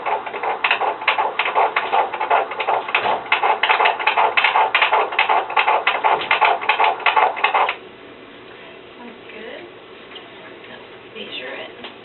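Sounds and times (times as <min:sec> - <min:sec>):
fetal heartbeat pulses: 0:00.0 - 0:07.8.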